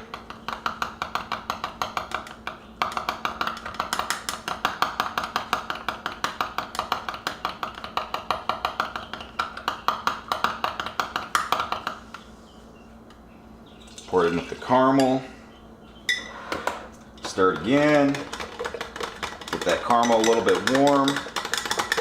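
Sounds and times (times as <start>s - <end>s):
stirrer clicking against cup: 0.5s - 9.8s, 17.2s - 22.0s.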